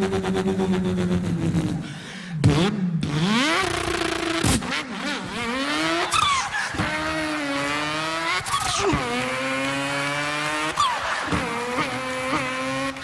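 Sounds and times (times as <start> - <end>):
man imitating car engine revs: 0.0 - 13.0.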